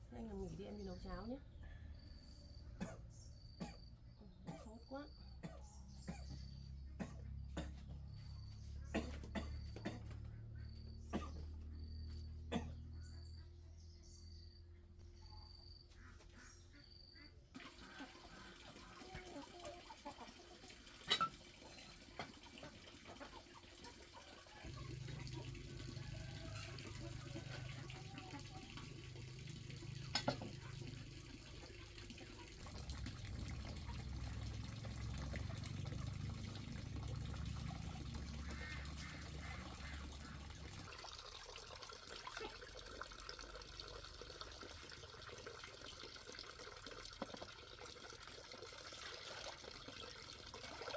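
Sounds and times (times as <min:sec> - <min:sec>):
water running and splashing: 0:17.6 - 0:50.9.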